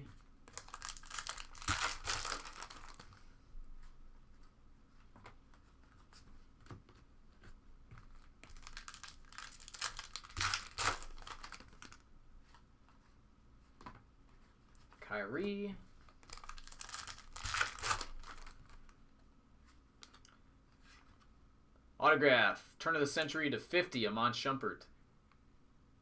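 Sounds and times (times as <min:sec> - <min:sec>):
wrappers tearing and crinkling: 0:00.5 - 0:03.2, 0:08.2 - 0:12.0, 0:16.1 - 0:18.9.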